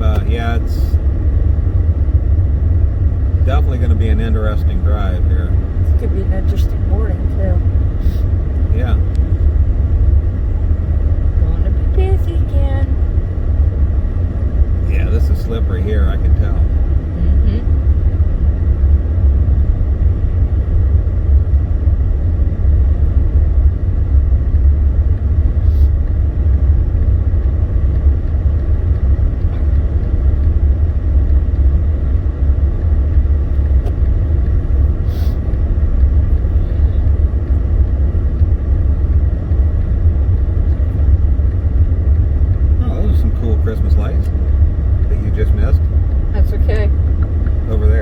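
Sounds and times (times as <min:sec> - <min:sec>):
car engine and tyre rumble: 0:00.0 - 0:48.0.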